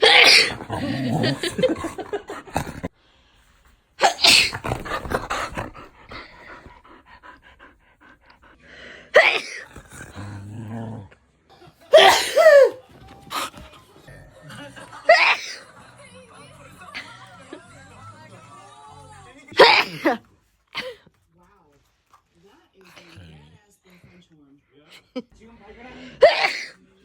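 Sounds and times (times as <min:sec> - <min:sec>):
dog grumbling: 0:00.0 - 0:02.9, 0:04.0 - 0:08.5, 0:09.2 - 0:11.2
person sneezing: 0:04.0 - 0:04.7, 0:11.9 - 0:12.8, 0:19.6 - 0:20.2.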